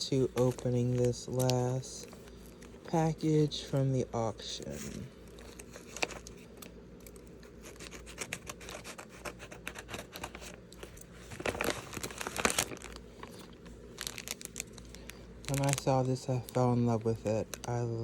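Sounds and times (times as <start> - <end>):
wrapping rustling and tearing: 0.1 - 2.8, 4.6 - 18.0
package wrapping crinkling: 0.1 - 2.9, 4.6 - 18.0.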